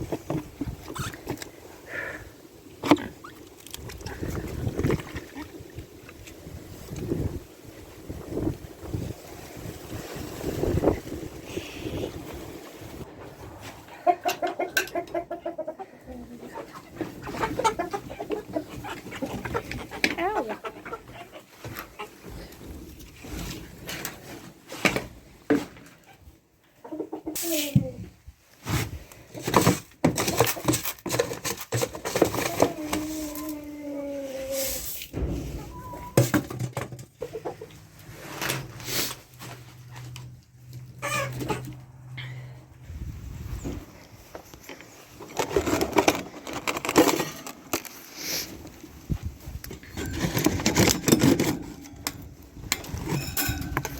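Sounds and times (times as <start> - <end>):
chickens clucking: 10.6 - 23.0, 25.9 - 28.0, 35.1 - 38.1, 39.7 - 42.8
knocks and rustling: 35.1 - 37.2, 49.2 - 53.9.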